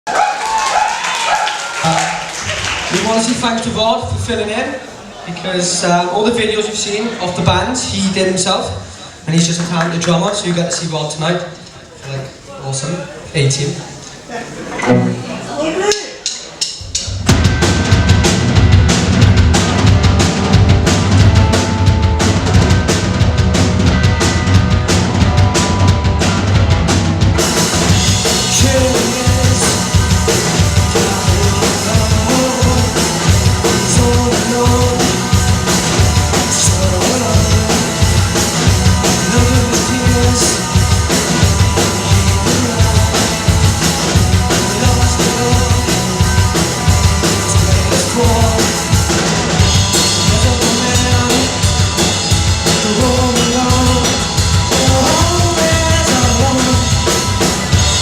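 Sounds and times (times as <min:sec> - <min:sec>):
live rock band playing: 0:13.8 - 0:58.0
drum kit beat: 0:14.2 - 0:58.0.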